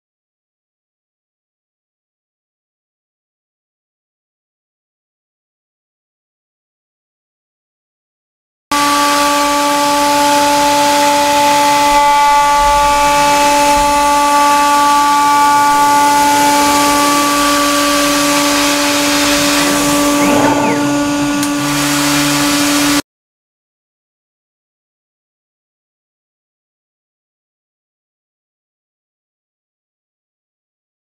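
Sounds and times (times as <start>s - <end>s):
router spindle whine: 8.7s - 23.0s.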